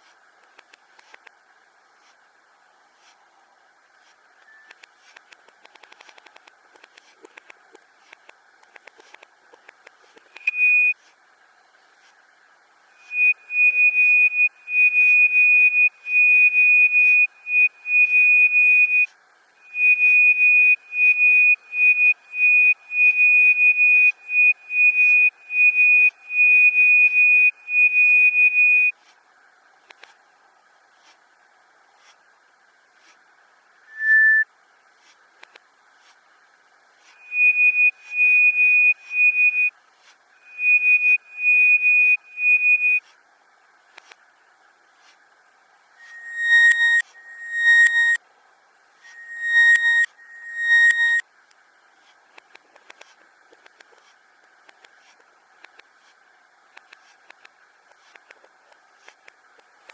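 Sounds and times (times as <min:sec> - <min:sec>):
faint hiss: 0:00.0 - 0:46.3, 0:51.2 - 0:59.9
high beeping tone: 0:46.0 - 0:48.2, 0:49.1 - 0:51.2.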